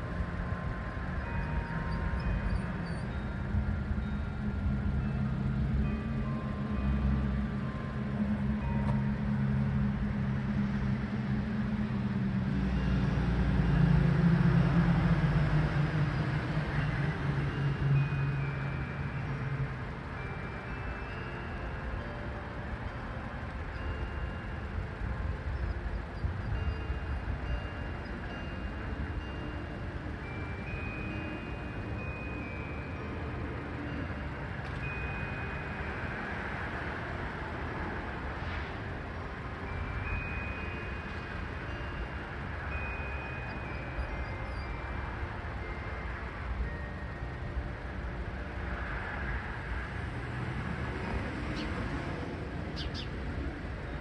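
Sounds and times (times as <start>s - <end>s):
steady low rumble: 0.0s - 20.7s
church chimes playing a tune: 0.0s - 54.0s.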